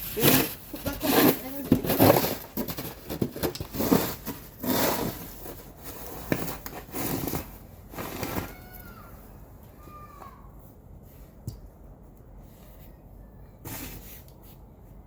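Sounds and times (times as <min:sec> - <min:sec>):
snow shovel scraping snow: 0:00.0 - 0:08.6.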